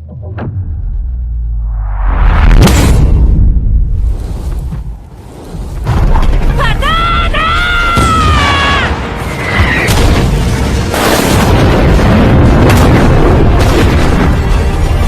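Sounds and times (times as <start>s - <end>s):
booming explosions and rumble: 0.3s - 15.0s.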